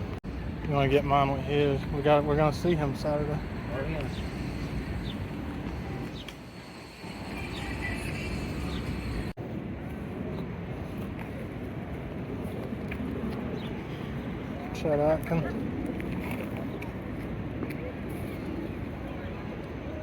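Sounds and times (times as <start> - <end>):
low rumble of passing traffic: 0.0 - 20.0.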